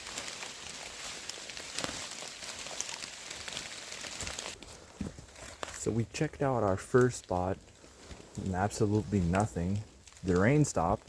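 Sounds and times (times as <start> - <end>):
steady rain falling: 0.0 - 4.6, 5.6 - 11.0
rain drop ticks: 5.6 - 11.0.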